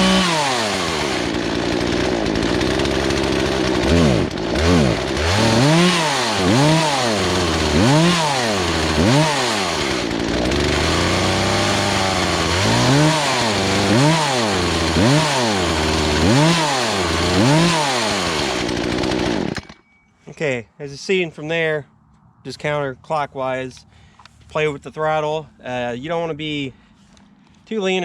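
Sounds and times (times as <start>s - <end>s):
chainsaw engine revving: 0.0s - 19.7s.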